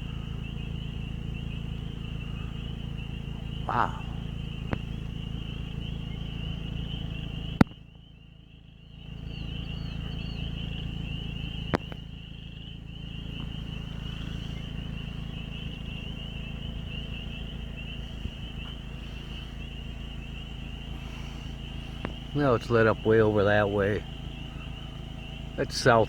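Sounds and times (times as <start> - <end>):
chorus of trilling creatures: 0.0 - 7.6, 8.6 - 26.0
low steady rumble: 0.0 - 26.0.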